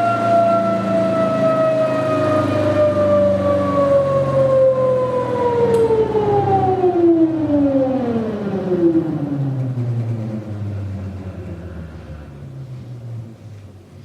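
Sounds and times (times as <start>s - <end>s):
motor-generator whining down: 0.0s - 14.0s
steady low hum: 2.4s - 14.0s.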